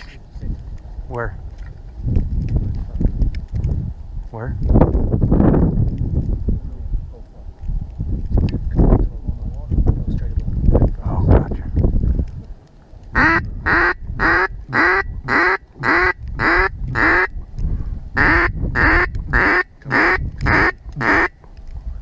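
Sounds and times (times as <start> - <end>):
duck call quacks: 13.2 - 17.3, 18.2 - 21.4.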